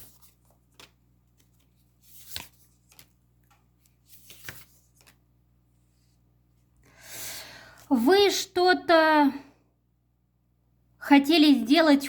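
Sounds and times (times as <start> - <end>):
cards rustling and flicking: 0.0 - 6.1.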